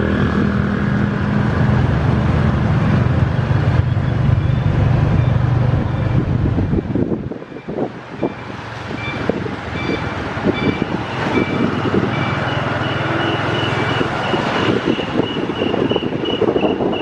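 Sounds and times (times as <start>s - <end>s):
vehicle engine humming: 0.0s - 17.0s
short high electronic beeps: 7.6s - 14.4s.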